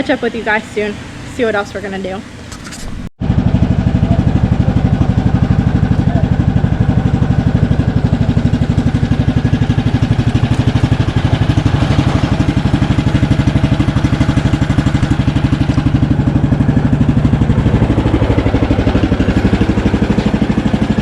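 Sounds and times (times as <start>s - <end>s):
lawn mower engine running: 0.0s - 21.0s.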